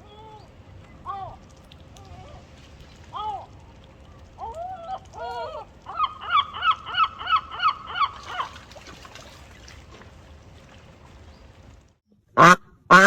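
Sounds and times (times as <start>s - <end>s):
goose honking: 4.4s - 8.6s.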